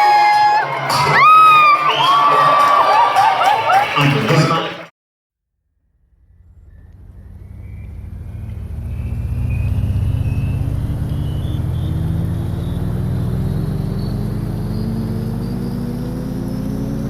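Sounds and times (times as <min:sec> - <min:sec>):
vehicle engine accelerating: 0:05.9 - 0:17.0
road noise: 0:06.0 - 0:17.0.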